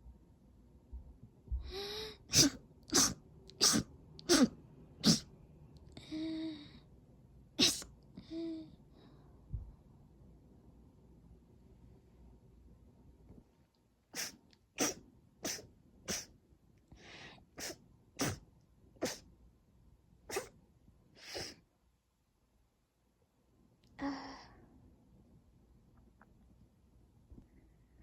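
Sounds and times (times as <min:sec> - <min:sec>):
woman sneezing: 0:02.3 - 0:05.3, 0:07.6 - 0:07.9, 0:14.2 - 0:16.3, 0:17.6 - 0:18.4, 0:19.0 - 0:19.2, 0:20.3 - 0:20.5.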